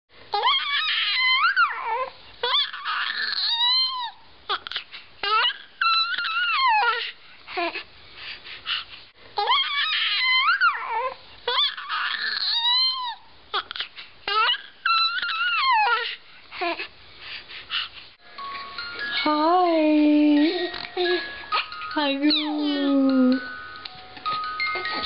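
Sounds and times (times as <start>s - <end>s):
baby squealing: 0.4s - 7.0s, 9.4s - 16.8s, 20.5s - 23.0s.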